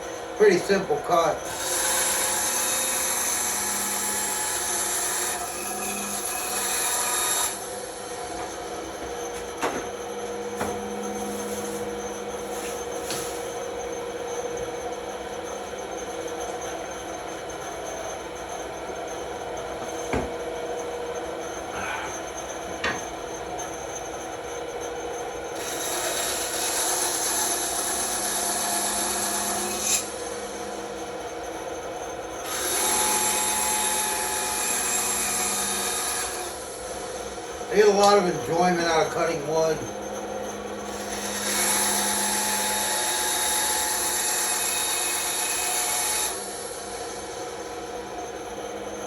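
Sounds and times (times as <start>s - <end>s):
bandsaw cutting wood: 0.6s - 7.7s, 25.6s - 30.2s, 32.4s - 36.7s, 37.7s - 39.9s, 40.9s - 46.6s.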